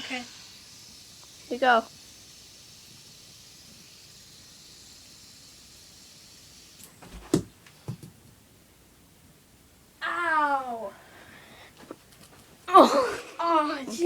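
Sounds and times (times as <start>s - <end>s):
fidget spinner hissing: 0.0s - 7.4s, 12.7s - 14.0s.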